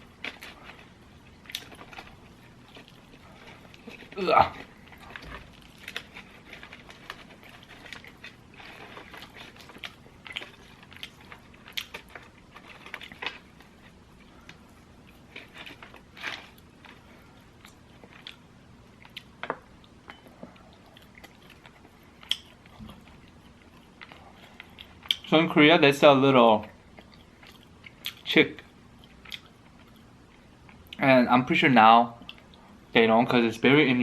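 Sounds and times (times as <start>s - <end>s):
crunchy bites and chewing: 0.0s - 20.0s.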